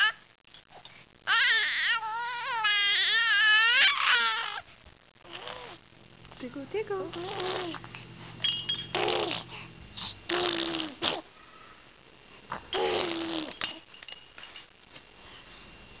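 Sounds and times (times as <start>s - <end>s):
baby making breathy vocal noises: 1.3s - 5.8s, 7.1s - 8.0s, 9.0s - 11.3s, 12.5s - 13.6s.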